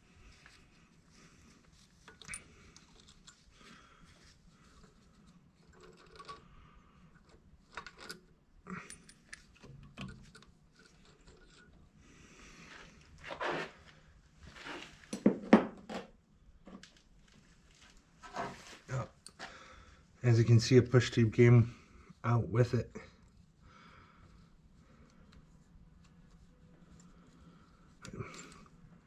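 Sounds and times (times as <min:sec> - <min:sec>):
metal tools clinking: 0:02.1 - 0:03.4.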